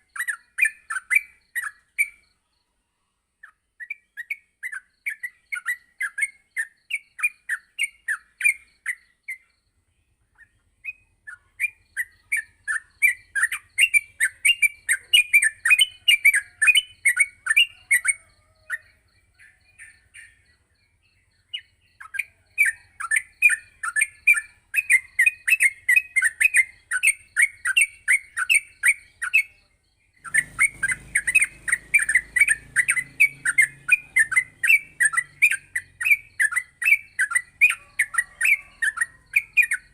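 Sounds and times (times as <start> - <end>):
bird singing chattering song: 0.0 - 39.9.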